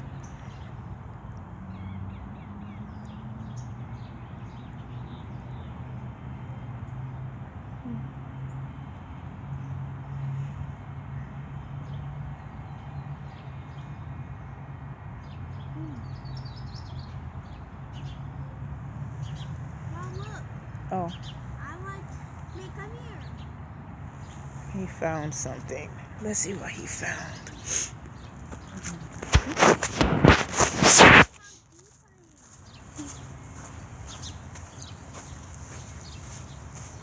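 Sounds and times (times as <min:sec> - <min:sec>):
birds chirping: 0:15.2 - 0:37.0.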